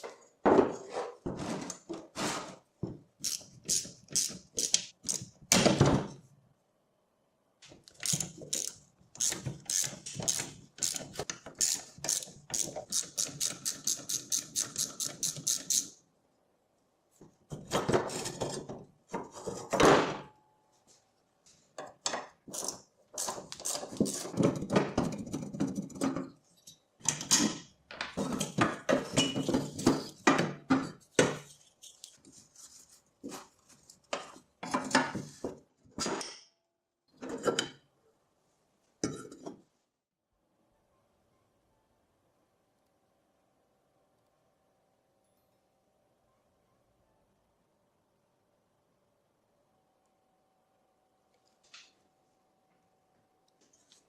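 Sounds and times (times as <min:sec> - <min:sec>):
hand tool rapid clicks: 0:08.0 - 0:15.9.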